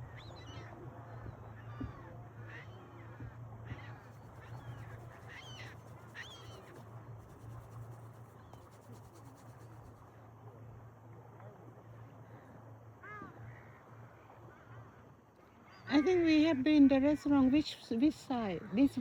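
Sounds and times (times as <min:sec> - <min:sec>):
birds calling: 0:00.0 - 0:06.8.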